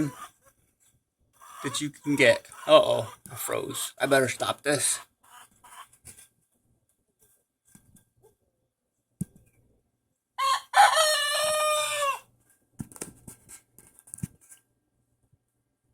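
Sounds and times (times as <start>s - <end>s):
young rooster crowing: 10.4s - 12.3s.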